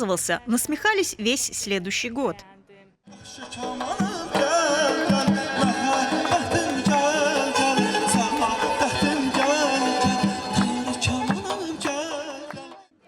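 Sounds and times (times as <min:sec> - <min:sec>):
ornamented folk melody: 0:03.5 - 0:12.4
drum beating steady rhythm: 0:03.6 - 0:12.7.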